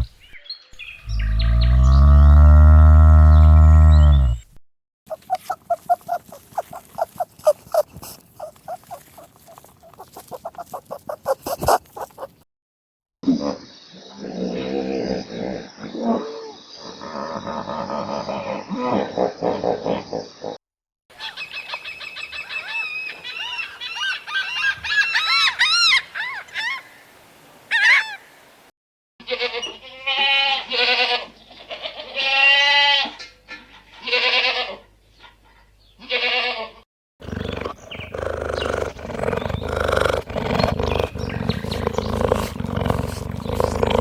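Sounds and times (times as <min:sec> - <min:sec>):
chickens clucking: 0:05.1 - 0:12.4
quavering bleats: 0:05.1 - 0:12.4, 0:36.0 - 0:36.7, 0:37.6 - 0:44.0.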